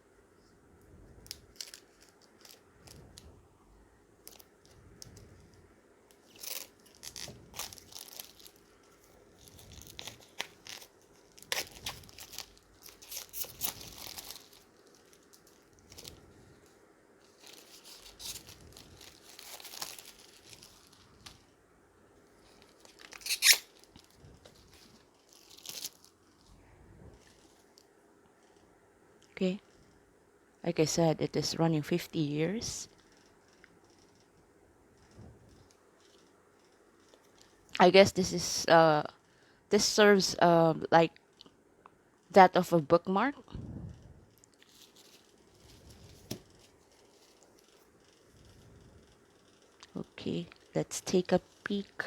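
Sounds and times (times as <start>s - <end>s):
plastic wrapping crinkling and tearing: 1.2s - 3.3s, 4.2s - 5.1s, 6.1s - 21.4s, 22.4s - 26.5s, 44.5s - 47.8s.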